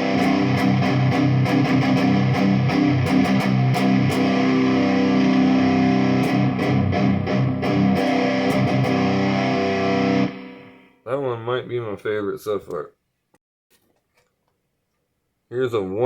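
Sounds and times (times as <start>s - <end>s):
electric guitar notes and chords: 0.0s - 11.0s.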